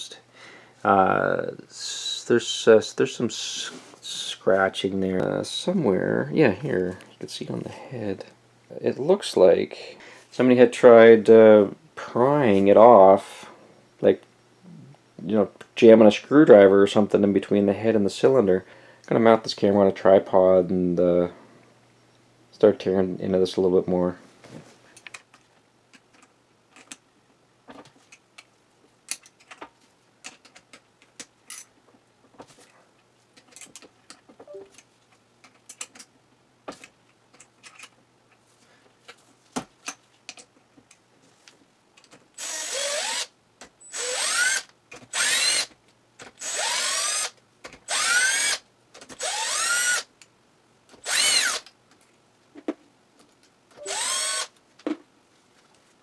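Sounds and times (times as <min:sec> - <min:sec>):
tools and parts clicking: 0:25.0 - 0:27.0, 0:29.1 - 0:31.7, 0:33.4 - 0:36.1, 0:36.7 - 0:38.4
cordless drill whining: 0:42.4 - 0:45.7, 0:46.4 - 0:47.3, 0:47.9 - 0:48.6, 0:49.2 - 0:50.1, 0:51.0 - 0:51.6, 0:53.8 - 0:54.5.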